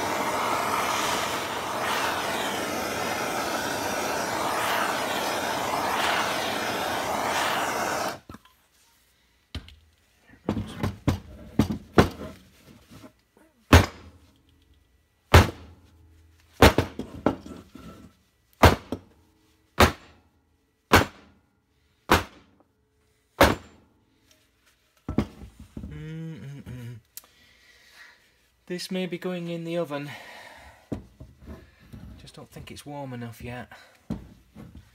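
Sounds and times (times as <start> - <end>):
heating tool hissing: 0.0 - 8.3.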